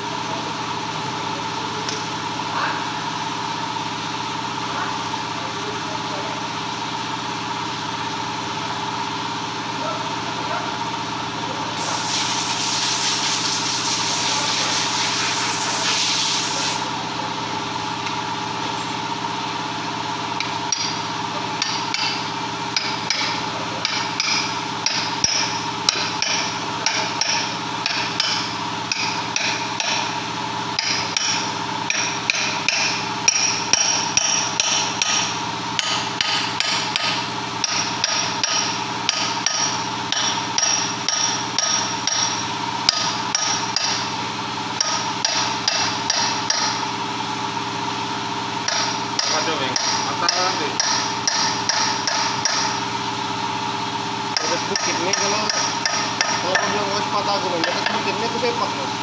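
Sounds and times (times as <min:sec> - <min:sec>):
steady mechanical hum: 0:00.0 - 0:59.0
loud hiss: 0:11.8 - 0:16.9
hammer striking metal: 0:21.6 - 0:30.2, 0:30.8 - 0:44.1, 0:44.8 - 0:46.9, 0:48.6 - 0:52.8, 0:54.3 - 0:57.0.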